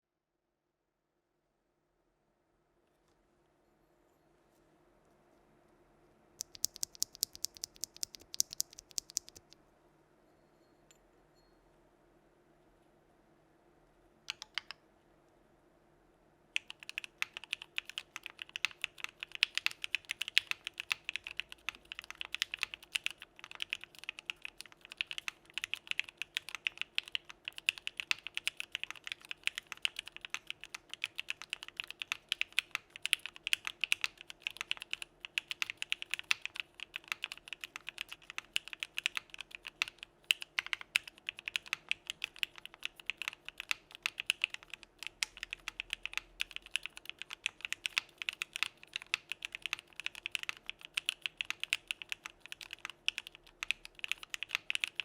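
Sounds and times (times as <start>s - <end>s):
fast typing on mechanical keyboard: 6.4s - 9.6s, 14.3s - 14.8s, 16.6s - 55.0s.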